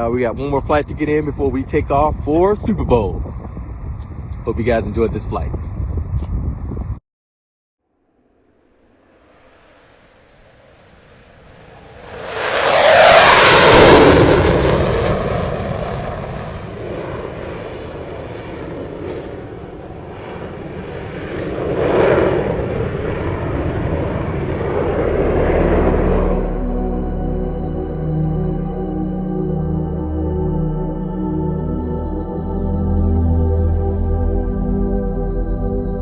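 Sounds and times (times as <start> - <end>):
rc jet ducted fans whooshing past: 8.7 - 26.6.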